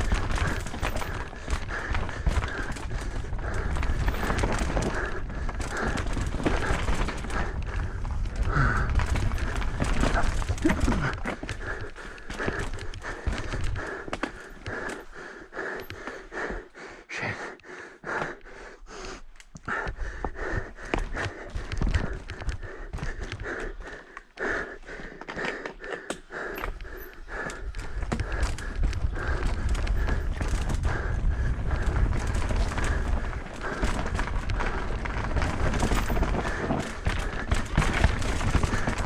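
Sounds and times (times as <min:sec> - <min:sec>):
tyres on dirt: 0:00.0 - 0:15.1, 0:25.1 - 0:39.0
bike chain and frame clatter: 0:00.0 - 0:15.2, 0:25.2 - 0:39.0
rider breathing hard: 0:00.0 - 0:39.0
wind rumble on microphone: 0:27.7 - 0:39.0.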